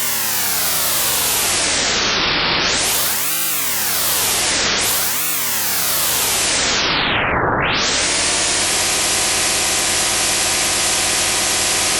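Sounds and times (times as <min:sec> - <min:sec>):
synthesized motor drone: 0:00.0 - 0:06.9.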